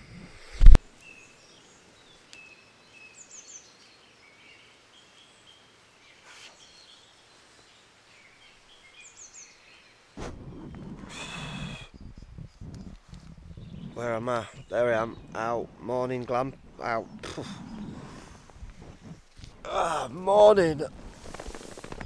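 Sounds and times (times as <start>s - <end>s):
rustling noise: 0.0s - 0.8s, 10.2s - 22.0s
woodland birds calling: 1.0s - 22.0s.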